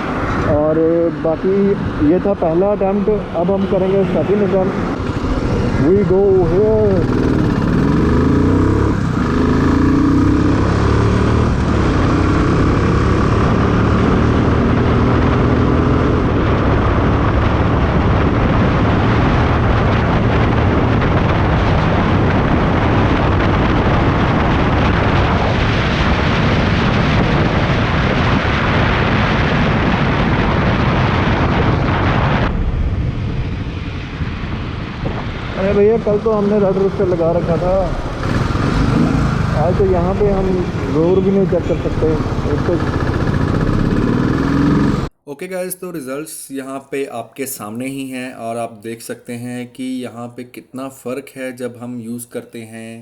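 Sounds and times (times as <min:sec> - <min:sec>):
motorcycle accelerating: 0:00.0 - 0:28.6, 0:31.3 - 0:45.2
wind rush on microphone: 0:00.0 - 0:45.1.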